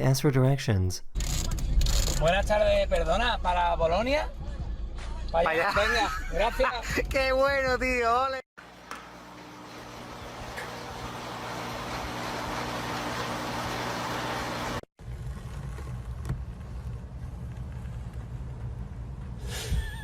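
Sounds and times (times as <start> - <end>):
road and wind noise: 11.9 - 20.0.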